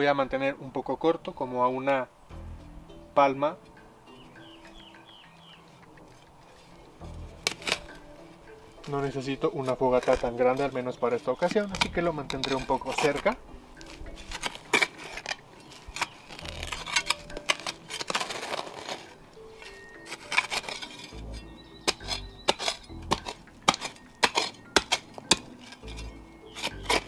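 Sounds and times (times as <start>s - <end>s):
quiet background music: 0.0s - 27.0s
shovel scraping stones: 6.0s - 27.0s
dull thuds of digging: 20.1s - 27.0s.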